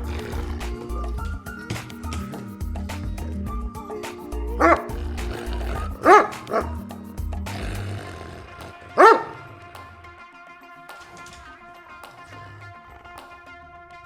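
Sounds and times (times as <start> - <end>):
background music: 0.0 - 14.0
dog barking loudly: 4.6 - 6.8, 8.9 - 9.5.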